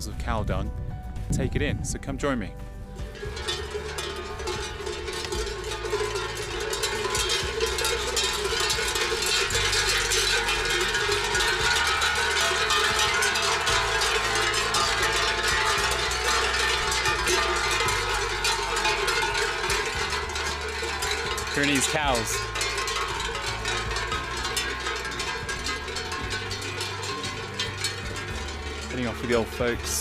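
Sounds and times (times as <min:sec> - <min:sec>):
cowbells clanking and ringing: 0:03.0 - 0:30.0.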